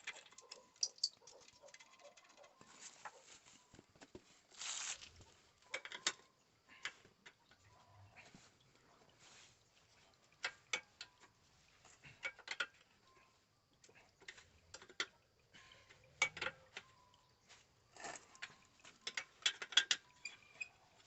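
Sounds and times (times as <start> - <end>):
wrenches clicking and tapping metal: 0.0 - 2.5, 5.6 - 7.4, 12.1 - 12.8, 14.2 - 16.9, 18.4 - 21.0.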